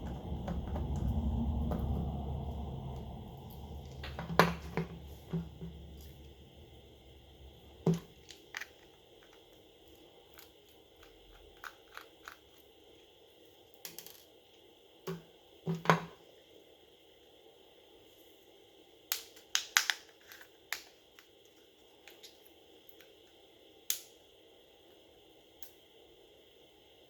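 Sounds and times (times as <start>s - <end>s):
low hum: 0.0s - 10.4s
clicks and taps of small parts: 19.1s - 21.3s.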